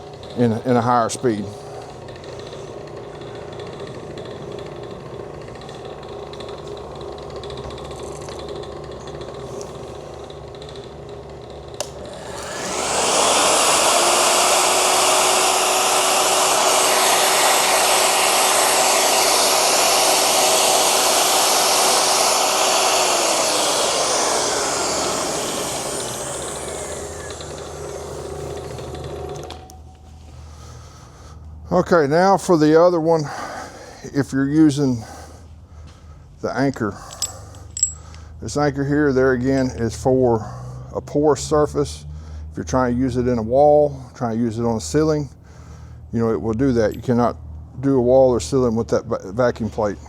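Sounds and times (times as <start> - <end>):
core drill motor whining: 0.0 - 31.6
vacuum pump humming: 0.0 - 31.6.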